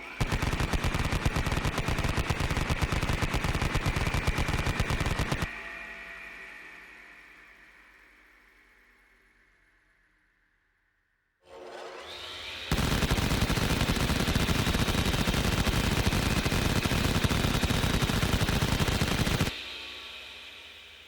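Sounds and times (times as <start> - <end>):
rapid machine gun fire: 0.2 - 5.5, 12.7 - 19.6.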